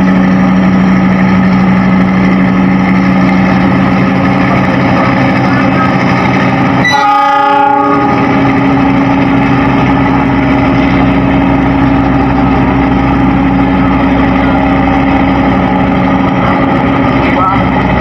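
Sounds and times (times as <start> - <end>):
locomotive engine running: 0.0 - 18.0
locomotive horn blast: 5.1 - 9.0.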